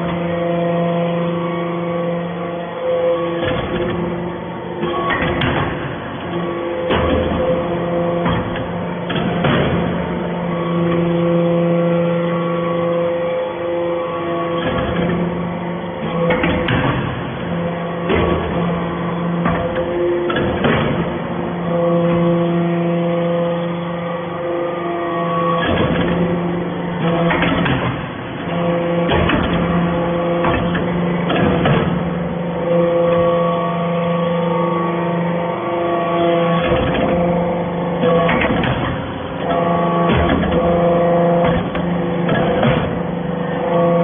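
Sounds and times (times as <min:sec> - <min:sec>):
hydraulic press humming: 0:00.0 - 0:44.0.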